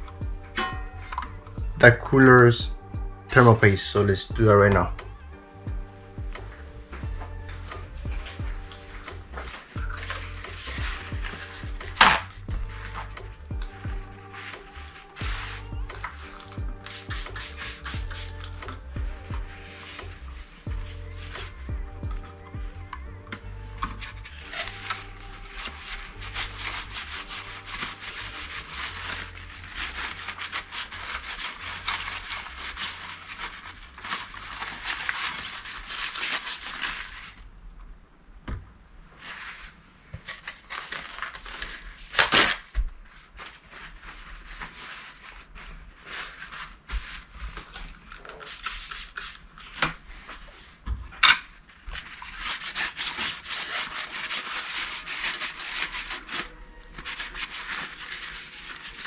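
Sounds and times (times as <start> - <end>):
scrubbing metal with cloth: 0.0 - 21.8, 24.0 - 37.4, 43.4 - 50.8, 51.9 - 59.0.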